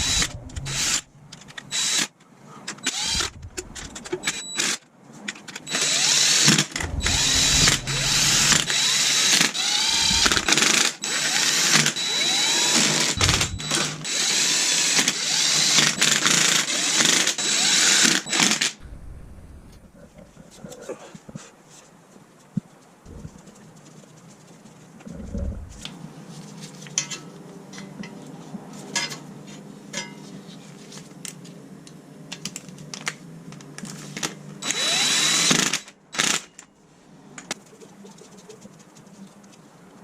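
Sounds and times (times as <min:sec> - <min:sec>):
power driver whining: 0:00.0 - 0:01.1, 0:02.9 - 0:04.2, 0:06.8 - 0:14.3.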